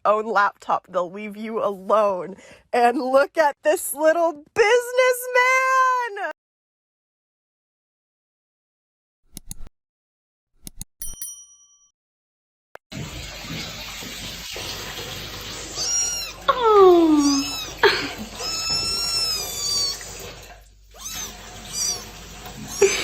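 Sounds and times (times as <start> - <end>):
cat meowing: 15.6 - 20.2, 20.9 - 23.0.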